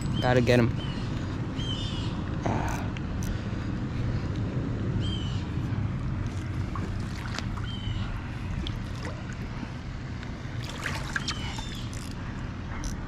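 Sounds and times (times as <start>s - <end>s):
steady low rumble: 0.0s - 13.0s
moving water: 6.2s - 13.0s.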